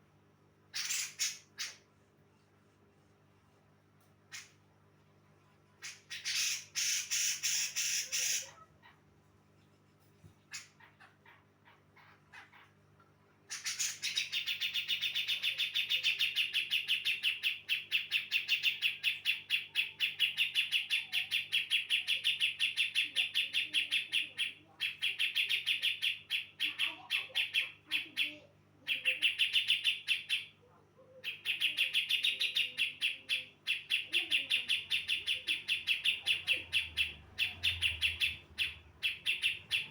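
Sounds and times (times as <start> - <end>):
faint steady hum: 0.0 - 39.9
bird chattering trill: 0.7 - 1.8, 5.8 - 8.6, 31.2 - 39.9.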